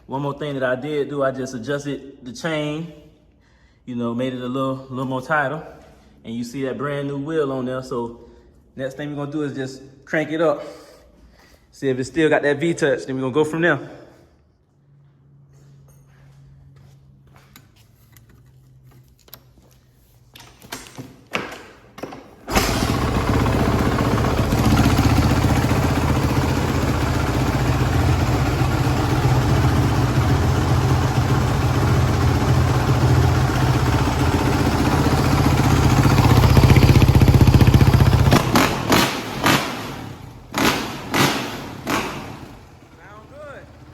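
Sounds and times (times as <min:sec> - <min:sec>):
dirt bike engine starting and running: 0:21.9 - 0:43.9.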